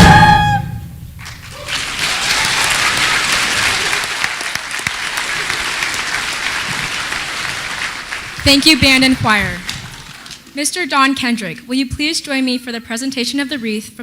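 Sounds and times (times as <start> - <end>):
audience applause: 1.2 - 10.6.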